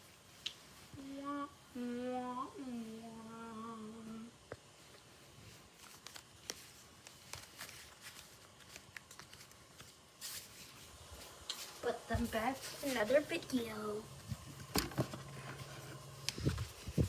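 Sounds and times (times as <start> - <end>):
person humming: 1.0 - 4.3.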